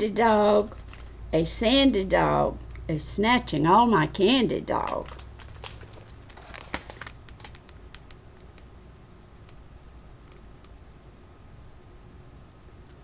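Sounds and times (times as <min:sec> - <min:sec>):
low room hum: 0:00.0 - 0:13.0
paper pages rustling: 0:04.8 - 0:08.6
page handling clicks: 0:04.8 - 0:08.7.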